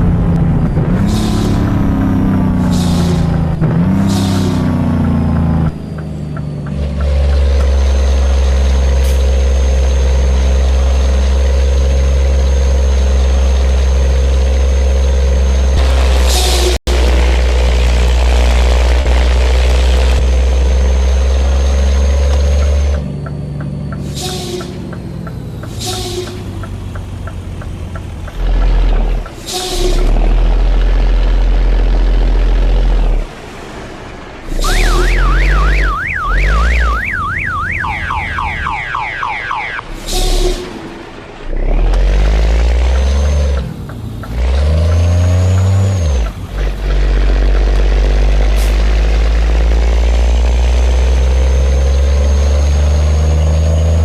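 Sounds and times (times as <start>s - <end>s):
truck diesel engine under load: 0.0s - 54.0s
warbling siren-like tone: 34.6s - 39.9s.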